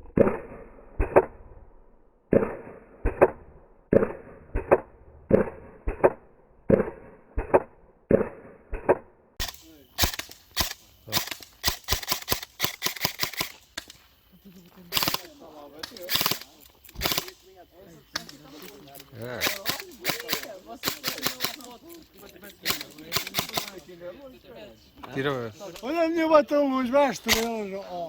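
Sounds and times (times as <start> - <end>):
airsoft gun shots: 2.3 - 13.9, 14.9 - 17.4, 19.4 - 21.7, 22.6 - 23.8.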